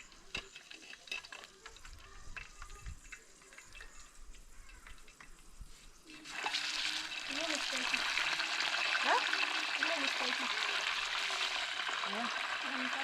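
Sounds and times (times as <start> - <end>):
clicks and scrapes of stirring: 0.0 - 9.5
chicken frying in a pan: 0.0 - 13.0.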